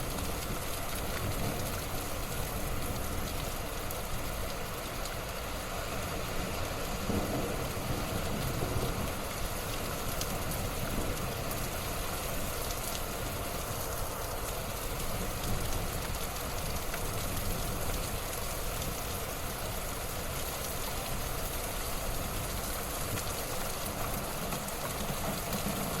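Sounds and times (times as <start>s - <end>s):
light rain falling: 0.0s - 26.0s
rain drop ticks: 6.5s - 19.6s, 20.4s - 26.0s.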